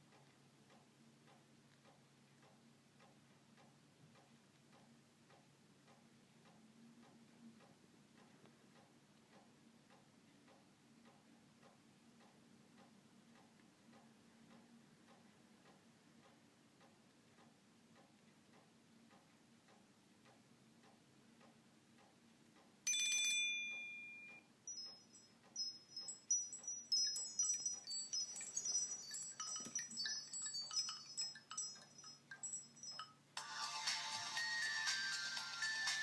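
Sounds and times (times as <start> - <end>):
faint ticking: 0.0 - 36.0
tinkling high notes: 22.9 - 36.0
ringtone music: 25.7 - 36.0.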